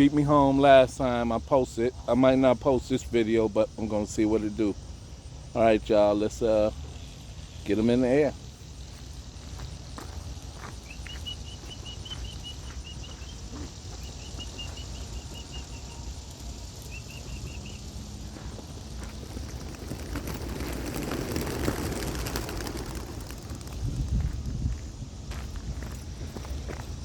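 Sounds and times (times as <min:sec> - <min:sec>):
bird chirping: 0:10.6 - 0:18.2
pigeon wings flapping: 0:18.4 - 0:25.0.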